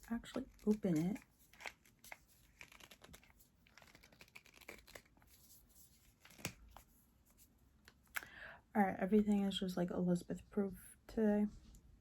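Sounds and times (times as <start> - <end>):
packaging crinkling and scratching: 0.0 - 6.8.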